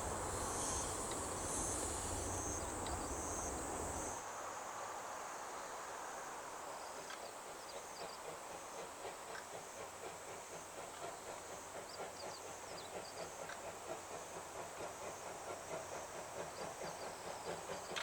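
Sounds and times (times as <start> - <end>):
distant steam locomotive: 0.0 - 18.0.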